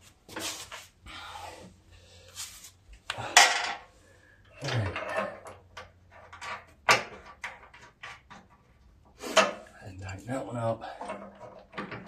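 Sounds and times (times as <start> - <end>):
metal tools clanking and scraping: 4.5 - 6.7.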